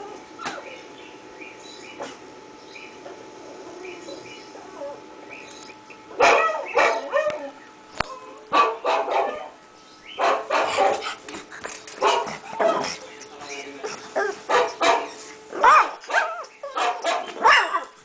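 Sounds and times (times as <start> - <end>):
dog barking: 6.2 - 7.4, 8.5 - 9.6, 10.2 - 11.0, 12.0 - 13.0, 14.2 - 17.9.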